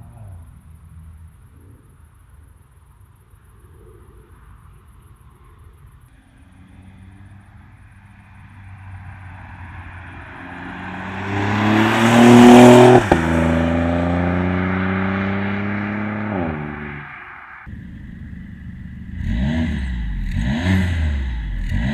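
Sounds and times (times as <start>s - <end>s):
car exhaust accelerating past: 6.5s - 21.9s.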